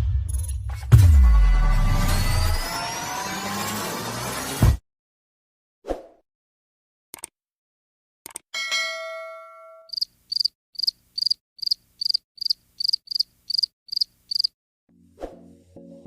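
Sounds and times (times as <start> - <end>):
click: 7.1 - 7.3, 8.2 - 8.4
bell-like ding: 8.6 - 9.9
crickets chirping: 9.9 - 14.5.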